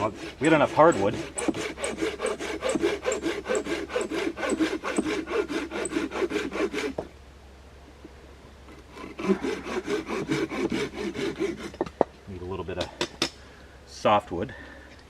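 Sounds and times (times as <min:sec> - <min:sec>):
hand saw cutting a log: 0:00.0 - 0:07.1, 0:08.9 - 0:11.9.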